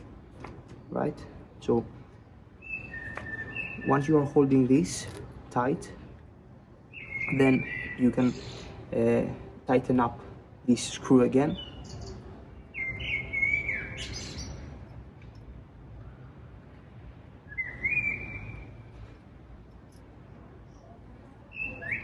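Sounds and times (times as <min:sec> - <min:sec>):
bird whistling calls: 0:02.6 - 0:04.3, 0:06.9 - 0:08.7, 0:12.8 - 0:14.6, 0:17.5 - 0:18.9, 0:21.5 - 0:22.0.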